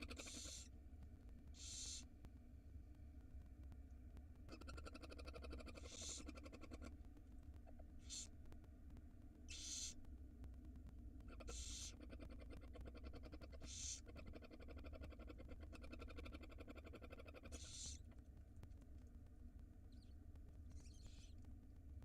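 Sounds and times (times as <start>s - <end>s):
owl nestlings hissing: 0.0s - 0.7s, 1.5s - 2.1s, 5.7s - 6.7s, 8.0s - 8.4s, 9.5s - 10.0s, 11.3s - 12.3s, 13.5s - 14.2s, 17.4s - 18.1s
faint steady hum: 0.0s - 22.0s.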